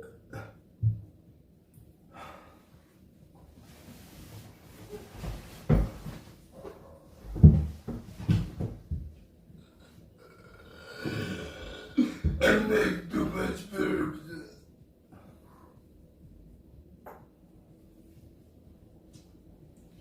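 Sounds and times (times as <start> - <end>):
person burping: 0.0 - 0.7, 10.2 - 14.6.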